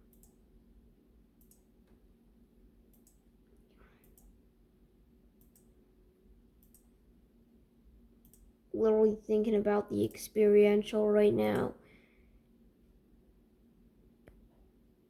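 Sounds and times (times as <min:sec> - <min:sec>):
faint steady hum: 0:00.0 - 0:15.0
computer mouse clicks: 0:00.1 - 0:00.4, 0:01.4 - 0:02.0, 0:02.9 - 0:04.4, 0:05.4 - 0:05.8, 0:06.6 - 0:06.9, 0:08.2 - 0:08.5.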